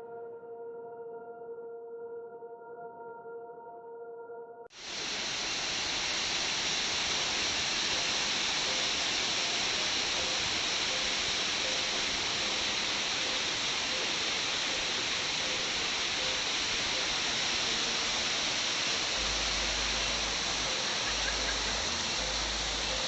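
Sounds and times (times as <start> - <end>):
waterfall rushing: 4.8 - 23.0.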